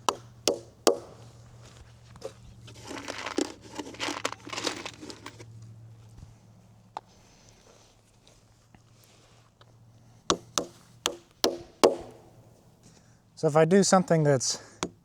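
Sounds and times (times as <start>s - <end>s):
hammer taps: 0.0s - 1.2s, 10.3s - 12.2s
crinkling rustling handling noise: 1.6s - 5.5s.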